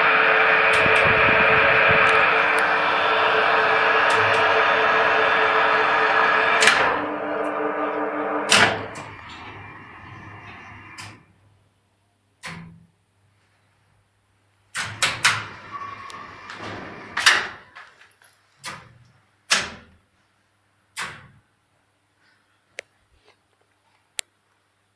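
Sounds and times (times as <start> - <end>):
faint low hum: 0.0 - 12.2.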